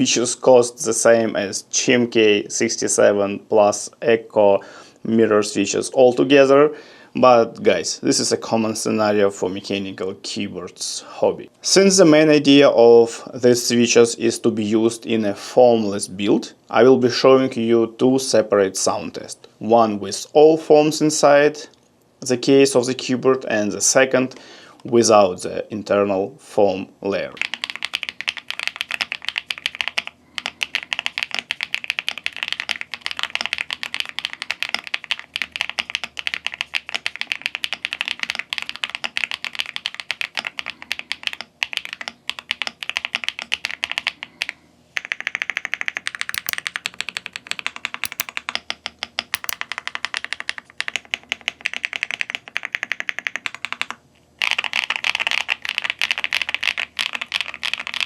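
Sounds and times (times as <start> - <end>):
mechanical keyboard key clacks: 46.3 - 47.1, 48.0 - 48.4, 49.4 - 49.8.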